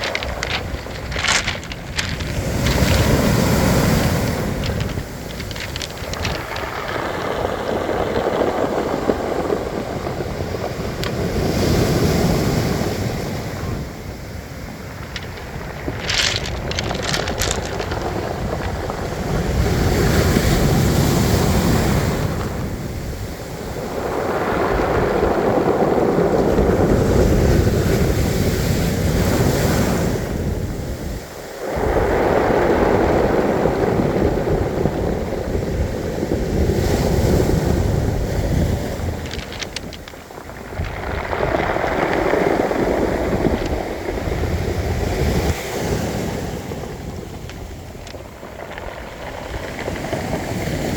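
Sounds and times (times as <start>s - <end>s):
stones clicking: 0.0s - 8.1s, 14.6s - 20.6s, 38.2s - 44.5s, 47.1s - 50.8s
sea waves breaking on pebble beach: 0.0s - 50.9s
wind buffeting microphone: 0.0s - 50.9s.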